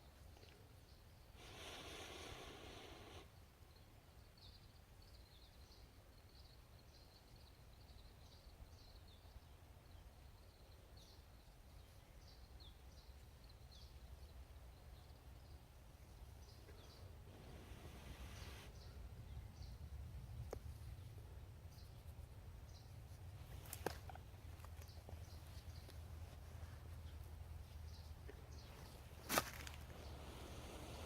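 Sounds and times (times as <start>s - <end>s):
low steady rumble: 14.6s - 31.0s.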